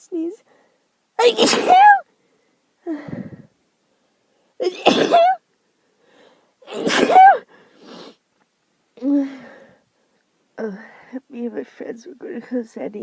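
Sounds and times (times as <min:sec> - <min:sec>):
girl sneezing: 0:01.2 - 0:02.1, 0:04.6 - 0:05.4, 0:06.6 - 0:08.2
soft breath: 0:02.1 - 0:04.6, 0:05.7 - 0:06.6, 0:09.0 - 0:11.2.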